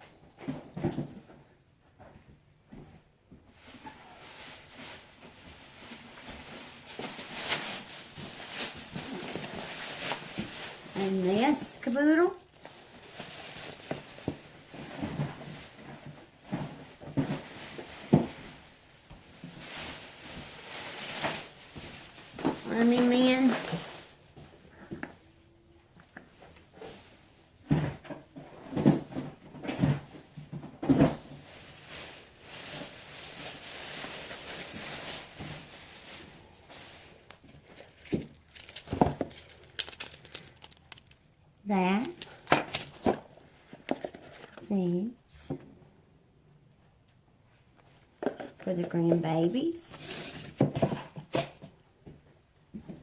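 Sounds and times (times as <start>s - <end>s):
packaging rustling: 3.6s - 24.9s, 31.0s - 44.7s.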